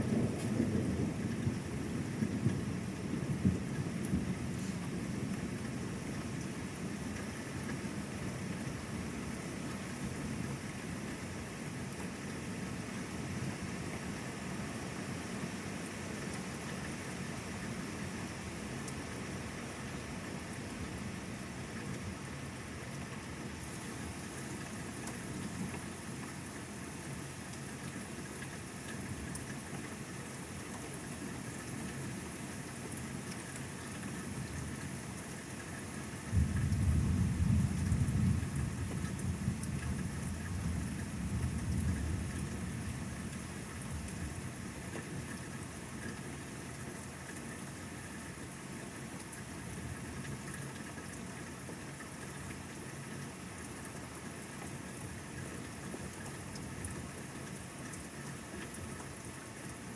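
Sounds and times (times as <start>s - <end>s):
steady rain: 0.0s - 59.9s
thunderclap rumbling: 36.3s - 43.0s.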